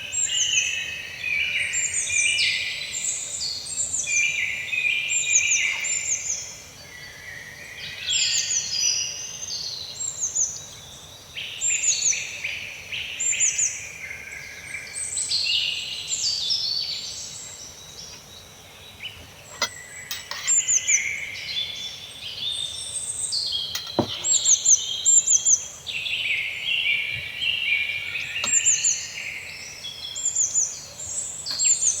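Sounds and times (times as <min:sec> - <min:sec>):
birds chirping and trilling: 0:14.3 - 0:32.0.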